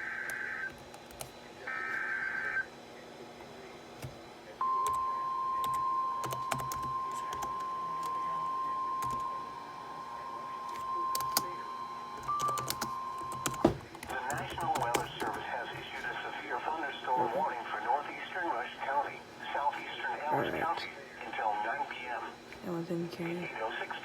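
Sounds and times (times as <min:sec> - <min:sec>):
steady warning alarm tone: 0:04.6 - 0:17.8.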